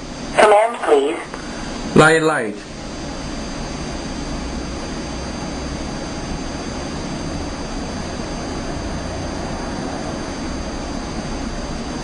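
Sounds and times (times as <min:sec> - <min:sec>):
faint high steady tones: 0:00.0 - 0:07.2
steady rushing noise from speaker: 0:00.0 - 0:12.0.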